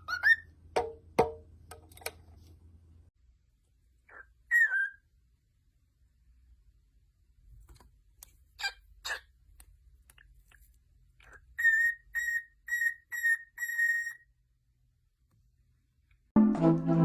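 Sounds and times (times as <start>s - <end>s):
woodwind melody music: 16.4s - 17.0s.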